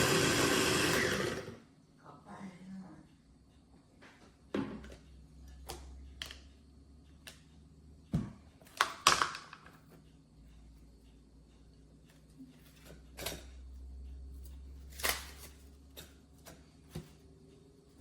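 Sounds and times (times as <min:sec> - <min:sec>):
plastic parts knocking and clattering: 0:08.1 - 0:09.8.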